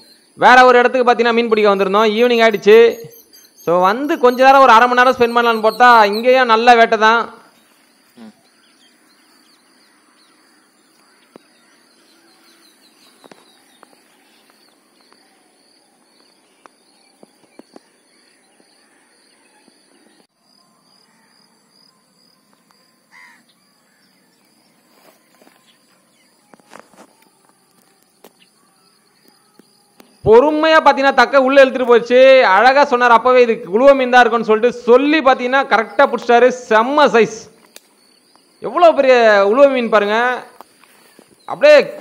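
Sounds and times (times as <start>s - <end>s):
birds calling: 0.0s - 42.0s
repeating high chirp: 1.8s - 6.5s.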